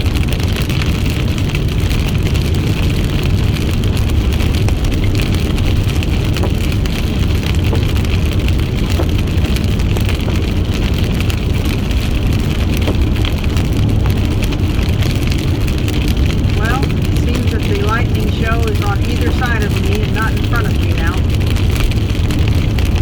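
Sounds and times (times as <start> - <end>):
car engine rumble inside cabin: 0.0 - 23.0.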